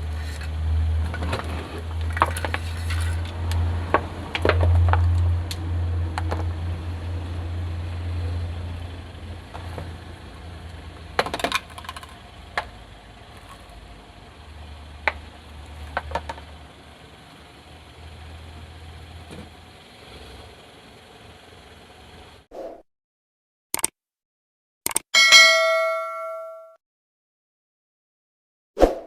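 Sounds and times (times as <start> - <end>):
car engine rumbling: 0.0 - 22.5
objects cracking under tyres: 0.1 - 5.6, 10.6 - 14.0, 15.0 - 16.6.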